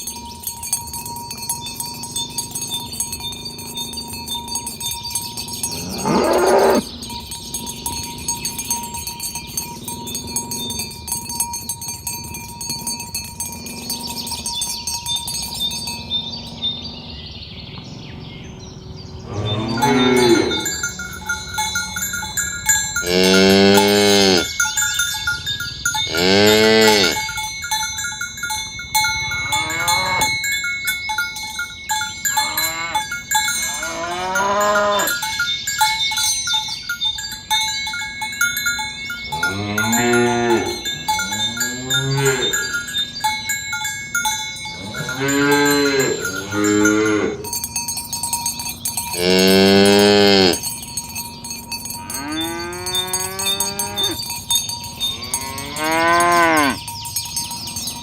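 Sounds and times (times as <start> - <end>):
cattle mooing: 5.7 - 6.9, 19.3 - 21.0, 23.0 - 24.5, 26.1 - 27.2, 29.5 - 30.4, 39.4 - 40.8, 41.4 - 42.7, 44.8 - 47.5, 49.2 - 50.6, 52.0 - 54.2, 55.2 - 56.8.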